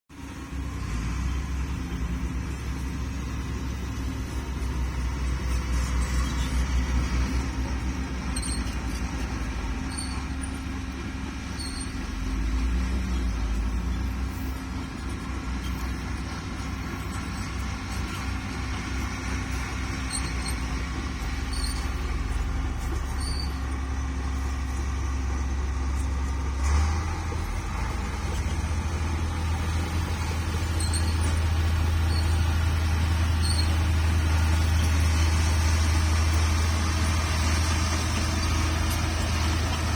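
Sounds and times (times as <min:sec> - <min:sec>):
heavy vehicle engine droning: 0:00.1 - 0:39.9.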